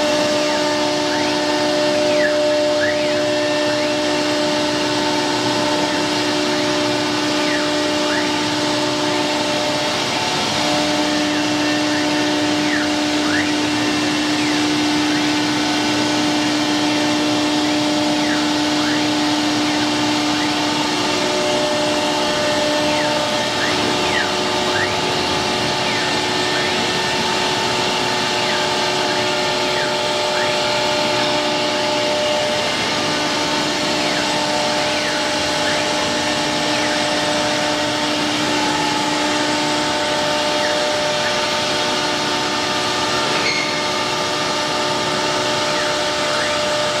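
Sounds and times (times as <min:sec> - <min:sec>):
cnc router running: 0:00.0 - 0:47.0
motor whines: 0:00.0 - 0:47.0.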